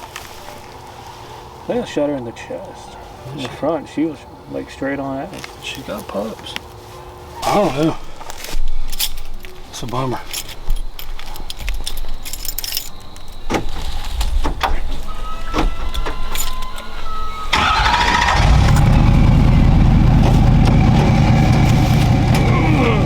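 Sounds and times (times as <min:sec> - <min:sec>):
engine cranking and idling: 0:15.0 - 0:23.0.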